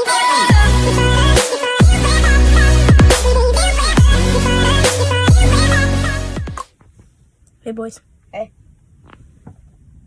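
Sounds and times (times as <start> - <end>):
electronic dance music: 0.0 - 6.6
falling bass drops: 0.5 - 6.6
wobbling synth melody: 0.6 - 6.6.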